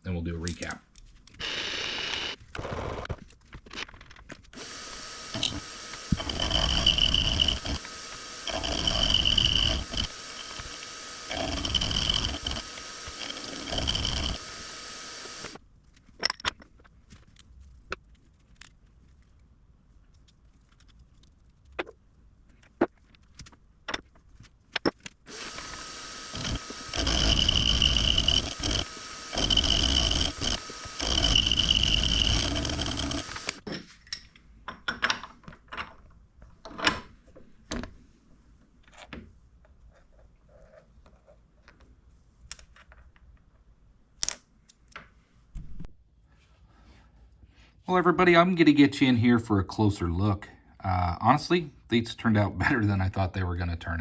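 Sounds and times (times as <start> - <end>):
high-pitched cutting whine: 4.6 - 15.6, 25.3 - 33.6
milling machine motor hum: 4.6 - 15.6, 25.3 - 33.6.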